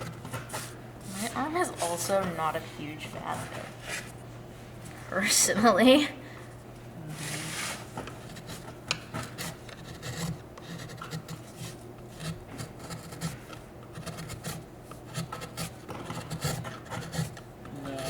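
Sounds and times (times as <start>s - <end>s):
carving tool scraping wood: 7.4s - 17.4s.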